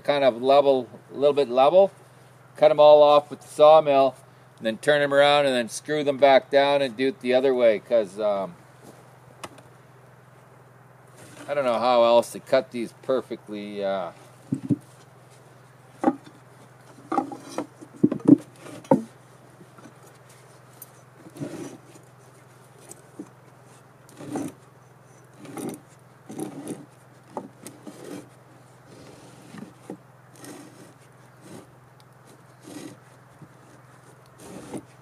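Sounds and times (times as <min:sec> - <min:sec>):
steady low hum: 0:00.0 - 0:35.0
wood rubbing: 0:11.1 - 0:11.7, 0:16.0 - 0:35.0
wooden knocks and clunks: 0:14.5 - 0:14.8, 0:16.0 - 0:16.3, 0:16.9 - 0:19.1.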